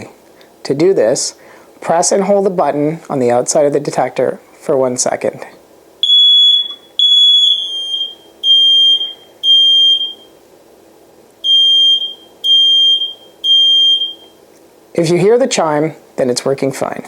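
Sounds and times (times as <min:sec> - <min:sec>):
loud high-pitched alarm beeps: 0:06.0 - 0:10.4, 0:11.4 - 0:14.4.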